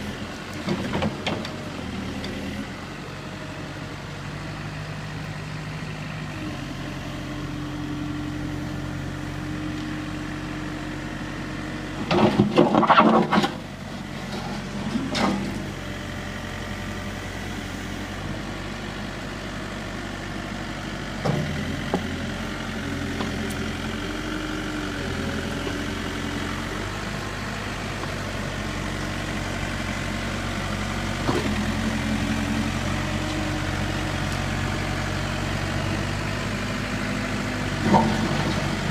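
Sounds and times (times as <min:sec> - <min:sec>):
diesel backhoe engine running: 0:00.0 - 0:38.9.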